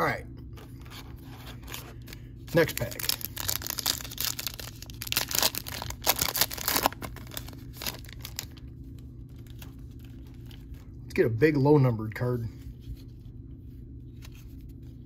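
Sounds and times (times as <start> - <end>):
wrapper tearing and crinkling: 2.5 - 8.7.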